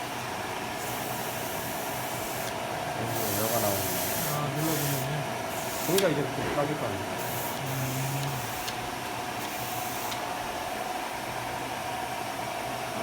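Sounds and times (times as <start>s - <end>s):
high hissing bursts: 3.1s - 6.0s.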